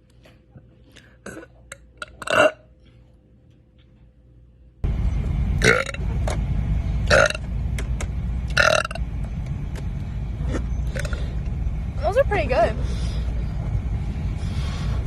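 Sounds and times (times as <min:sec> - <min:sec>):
low background rumble: 0:03.1 - 0:15.0.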